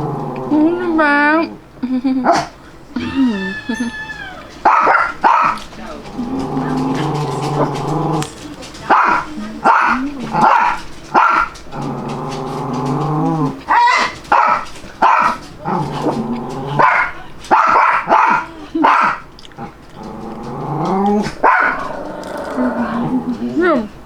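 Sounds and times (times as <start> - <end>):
dog barking: 2.2 - 2.6, 4.6 - 11.6, 13.7 - 15.4, 16.8 - 19.3, 21.2 - 22.0
dog drawn-out cries: 3.0 - 5.6, 13.7 - 14.6.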